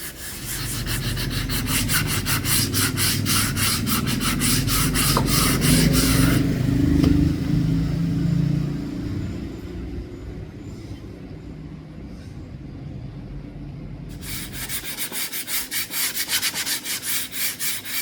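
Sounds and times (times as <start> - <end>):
hand sanding wood: 0.0 - 6.5, 14.1 - 18.0.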